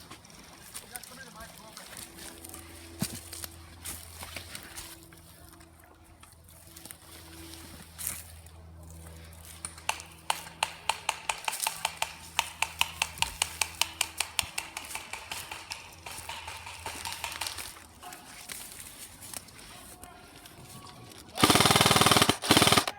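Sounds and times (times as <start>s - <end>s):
airsoft gun shots: 9.9s - 17.8s, 21.4s - 22.9s.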